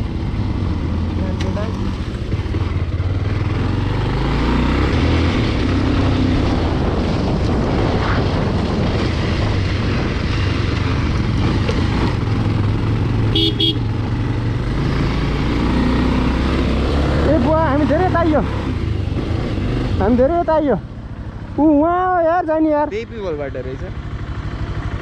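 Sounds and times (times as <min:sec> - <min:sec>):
motorcycle engine running: 0:00.0 - 0:25.0
short horn beeps: 0:13.4 - 0:13.8.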